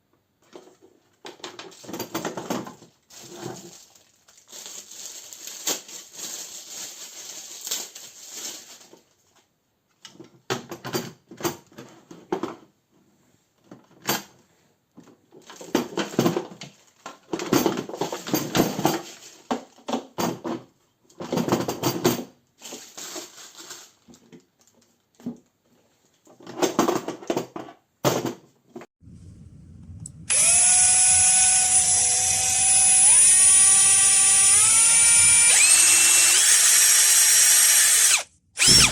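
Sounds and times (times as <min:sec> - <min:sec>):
drill motor whine: 0:30.3 - 0:38.9
hammer drill bursts: 0:30.3 - 0:38.9.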